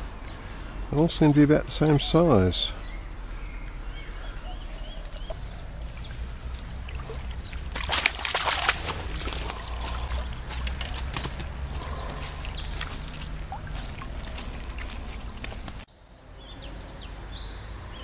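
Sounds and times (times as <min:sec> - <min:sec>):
small birds chirping: 0:00.0 - 0:18.0
water splashing and sloshing: 0:04.8 - 0:15.9
water dripping and trickling: 0:04.9 - 0:15.9.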